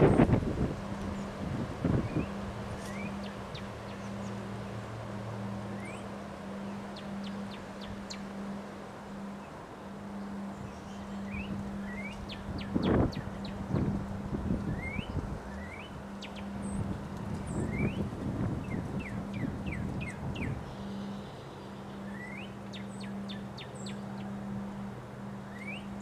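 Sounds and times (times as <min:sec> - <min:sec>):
wind blowing: 0:00.0 - 0:03.9, 0:10.5 - 0:20.8.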